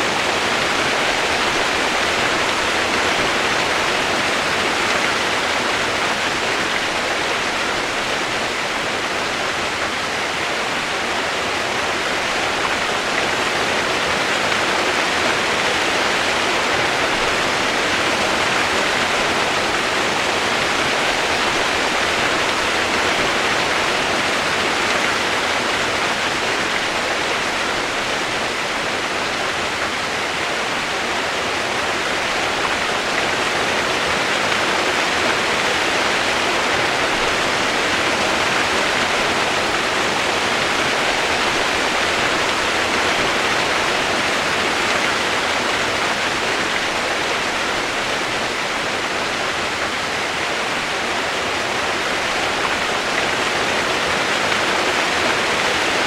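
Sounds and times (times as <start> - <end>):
rushing water: 0.0 - 56.0.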